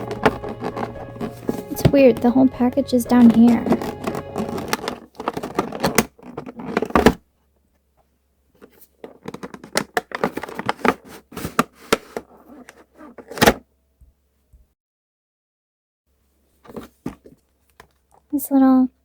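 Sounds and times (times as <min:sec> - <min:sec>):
packaging clicks and crinkles: 0:00.0 - 0:02.3, 0:03.1 - 0:07.2, 0:08.6 - 0:13.5.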